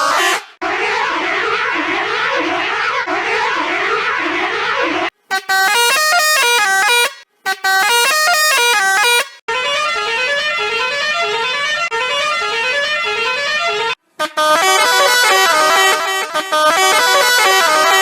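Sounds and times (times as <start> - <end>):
musical bus horn: 5.3 - 18.0.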